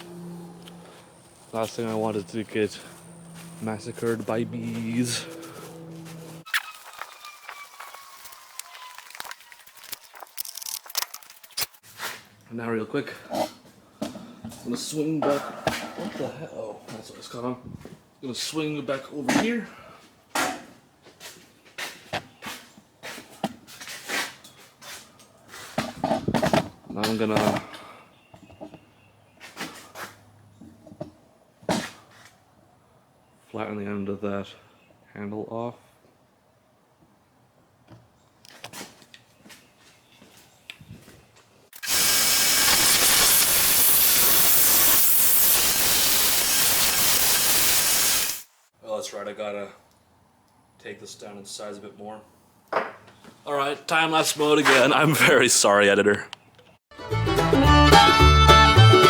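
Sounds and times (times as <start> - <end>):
footsteps: 0.0 - 12.3
power tool running loudly: 41.8 - 43.7.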